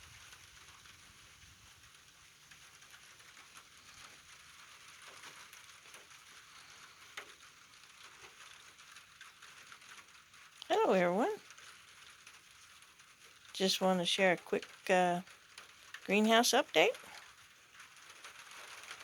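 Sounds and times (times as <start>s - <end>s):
light rain pattering: 0.0s - 19.0s.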